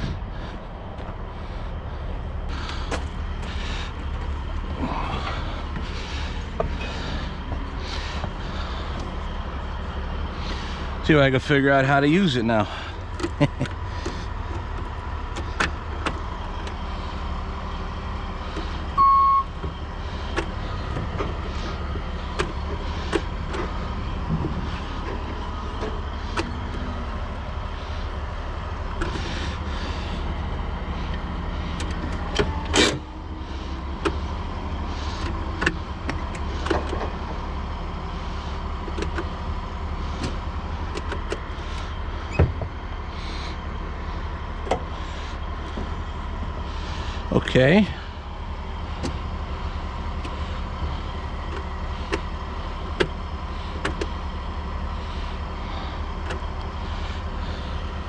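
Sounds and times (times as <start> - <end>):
engine idling: 0.0 - 58.0
short beep: 19.0 - 19.5.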